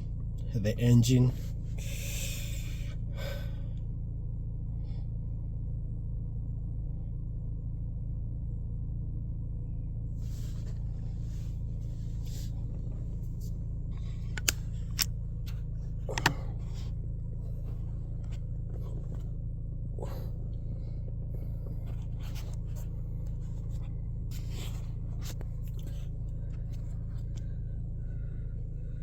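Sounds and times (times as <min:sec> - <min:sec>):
car engine idling: 0:00.0 - 0:29.0
sharp clicks and knocks: 0:14.3 - 0:15.1, 0:16.1 - 0:16.5.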